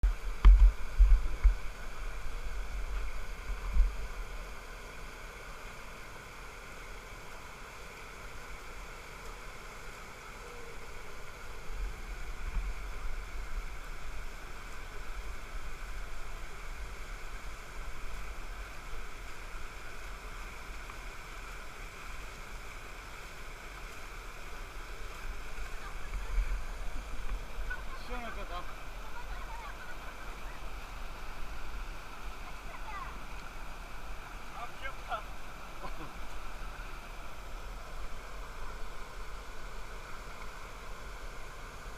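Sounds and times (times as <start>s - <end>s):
wind rumble on microphone: 0.0s - 4.2s
stream flowing water: 0.0s - 41.9s.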